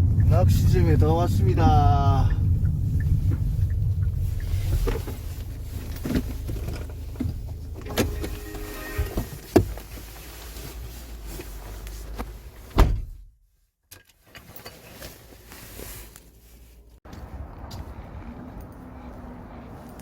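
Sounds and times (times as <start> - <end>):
car low rumble: 0.0 - 13.4, 15.2 - 20.0
car door slamming: 12.7 - 13.3.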